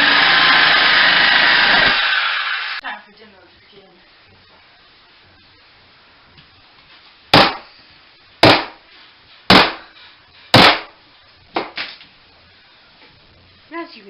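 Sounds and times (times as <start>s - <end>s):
hammer striking a wall: 8.4s - 8.8s.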